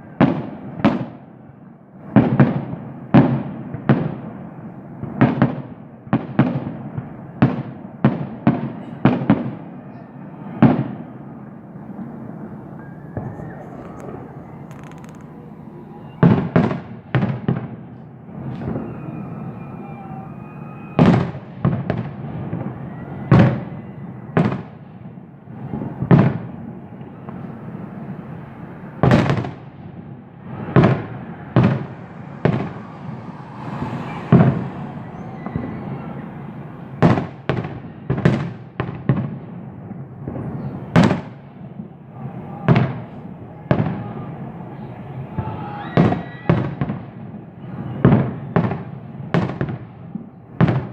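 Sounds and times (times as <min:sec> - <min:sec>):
fireworks bangs: 0:00.0 - 0:44.4, 0:45.1 - 0:50.9
rumbling and crackle: 0:13.2 - 0:15.5.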